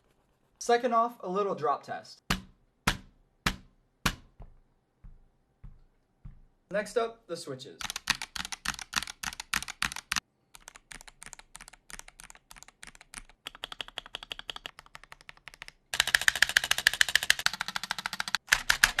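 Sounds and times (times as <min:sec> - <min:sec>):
fast typing: 0:07.8 - 0:19.0
mechanical keyboard clacking: 0:07.8 - 0:19.0.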